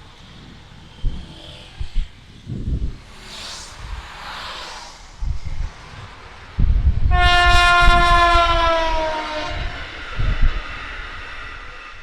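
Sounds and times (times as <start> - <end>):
low rumble: 0.5 - 8.8
train horn blast: 7.1 - 9.9.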